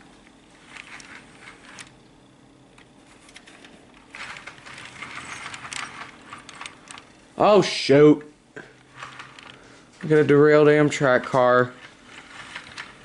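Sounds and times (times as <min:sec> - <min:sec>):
model train clicking and rattling: 0:00.7 - 0:02.0, 0:02.8 - 0:07.5, 0:08.9 - 0:13.0.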